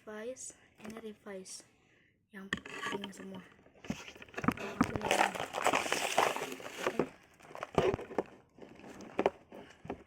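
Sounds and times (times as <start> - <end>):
plastic packaging crinkling: 3.9 - 9.4.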